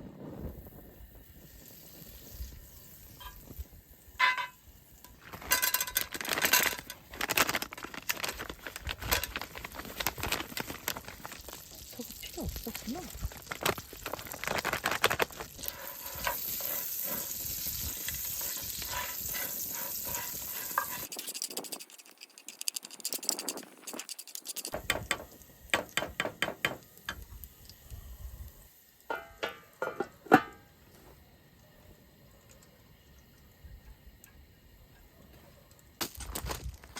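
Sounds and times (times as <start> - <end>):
popcorn sizzling in a pot: 0.0 - 35.1
pot and utensils knocking: 4.2 - 4.6, 29.1 - 30.6.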